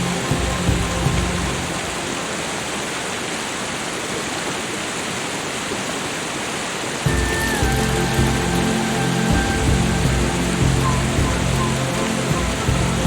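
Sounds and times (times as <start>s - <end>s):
soft low music notes: 0.0s - 2.6s, 7.0s - 13.0s
rushing water: 0.0s - 13.0s.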